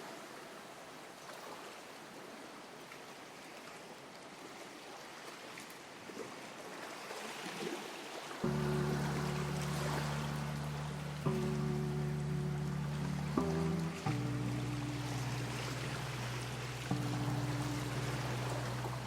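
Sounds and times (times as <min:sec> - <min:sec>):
faint water splashes: 0:00.0 - 0:19.0
water lapping against pier: 0:00.0 - 0:19.0.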